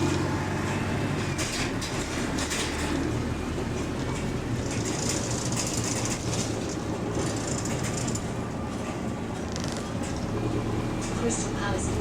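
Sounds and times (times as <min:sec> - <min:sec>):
bus engine and road rumble: 0:00.0 - 0:12.0
body rattling: 0:04.0 - 0:08.5.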